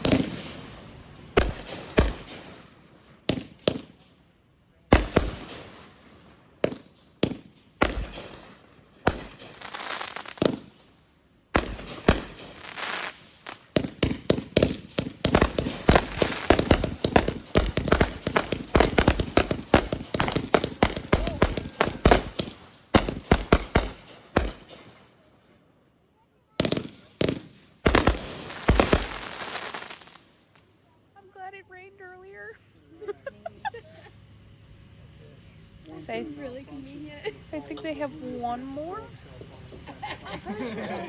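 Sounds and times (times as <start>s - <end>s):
rapid firework bangs and crackle: 0.0s - 25.4s, 26.5s - 30.7s
firework booms: 0.0s - 25.5s, 26.5s - 30.7s.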